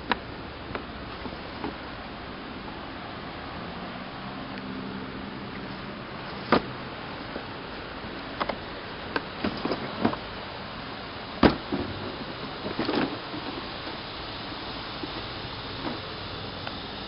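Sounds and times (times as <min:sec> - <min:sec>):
steady background hiss: 0:00.0 - 0:17.0.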